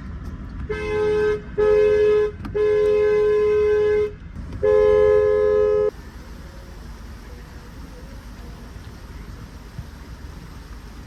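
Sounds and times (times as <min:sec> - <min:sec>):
two-note horn blasts: 0:00.7 - 0:05.9.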